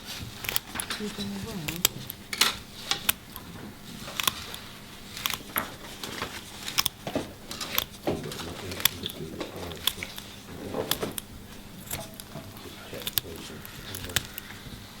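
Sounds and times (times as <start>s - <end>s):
light clicks and taps of instruments: 5.2s - 14.5s.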